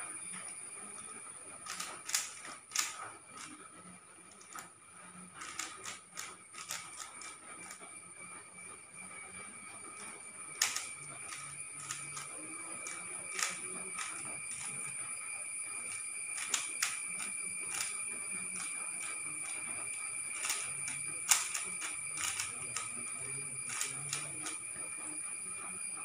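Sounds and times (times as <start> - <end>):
plastic puzzle cube clicking: 1.6 - 3.6, 5.4 - 7.8, 10.6 - 14.8, 15.9 - 18.0, 20.3 - 23.0, 23.7 - 24.6.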